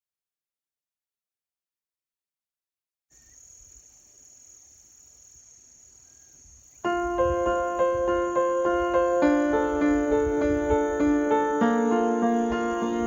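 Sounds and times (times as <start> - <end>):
crickets trilling: 3.1 - 13.0
faint bird chirps: 3.1 - 13.0
piano music: 6.8 - 13.0.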